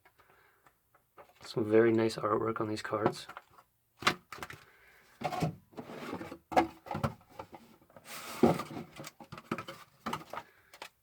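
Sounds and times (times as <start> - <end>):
cardboard and paper rustling: 3.1 - 11.0.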